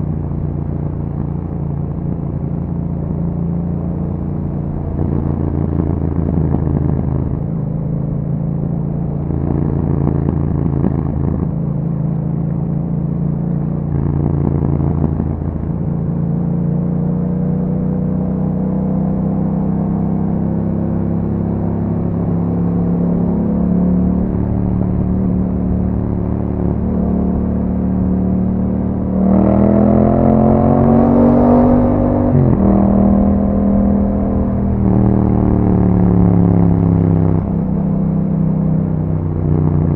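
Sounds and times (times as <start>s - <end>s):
motorcycle engine: 0.0s - 39.9s.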